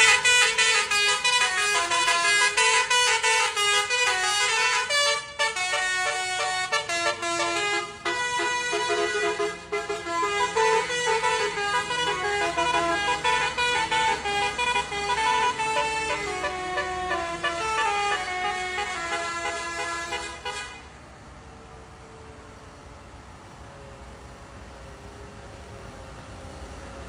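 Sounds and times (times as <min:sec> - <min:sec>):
bus air horn playing a tune: 0:00.0 - 0:20.9
road traffic rumble: 0:00.0 - 0:27.0.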